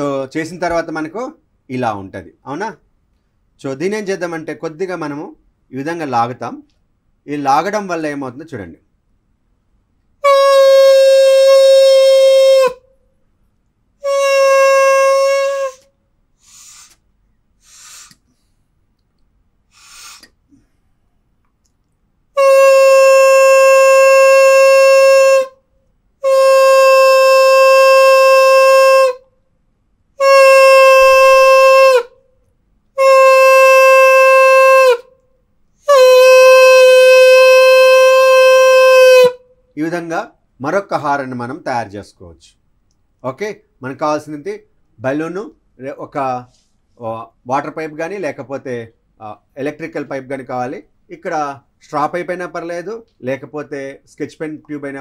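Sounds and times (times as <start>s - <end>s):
balloon horn blasts: 10.2s - 12.8s, 14.0s - 15.9s, 22.4s - 25.6s, 26.2s - 29.2s, 30.2s - 32.1s, 33.0s - 35.1s, 35.8s - 39.4s
faint breathy puffs: 16.4s - 18.8s, 19.7s - 21.0s.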